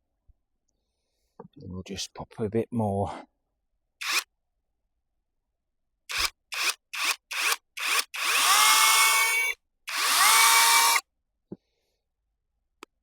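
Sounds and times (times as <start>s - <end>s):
battery chainsaw whining: 6.1s - 11.0s.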